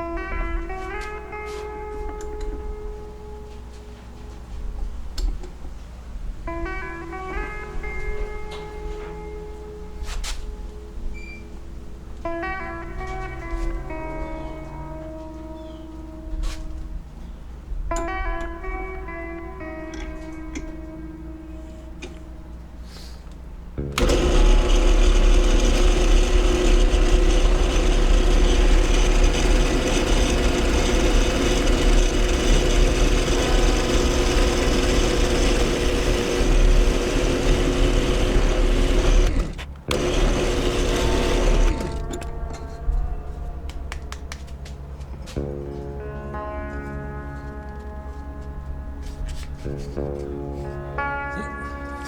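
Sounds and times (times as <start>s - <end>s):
electric power tool running: 24.0s - 42.3s.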